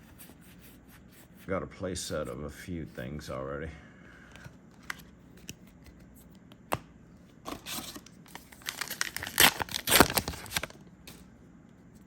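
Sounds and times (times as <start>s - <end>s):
foil wrapper tearing and crinkling: 8.3s - 10.8s.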